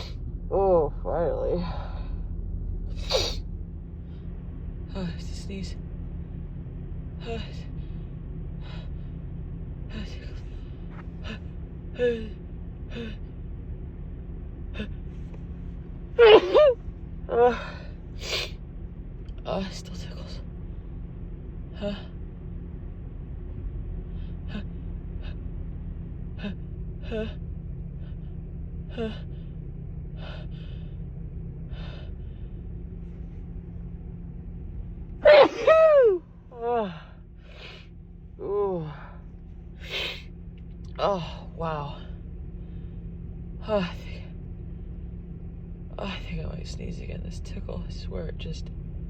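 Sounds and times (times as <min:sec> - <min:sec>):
person sneezing: 0:16.2 - 0:16.8, 0:35.2 - 0:36.1
faint breaths: 0:26.4 - 0:34.0, 0:42.0 - 0:43.6.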